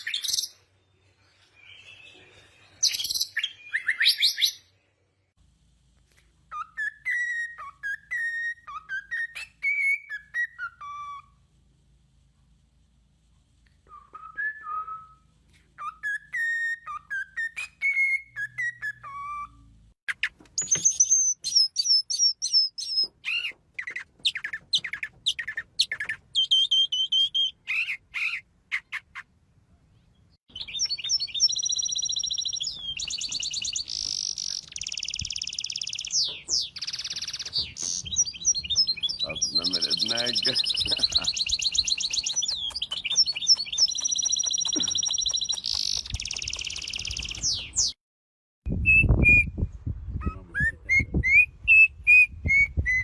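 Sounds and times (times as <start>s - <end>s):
songbird singing trills: 15.8s - 29.2s, 30.0s - 48.0s.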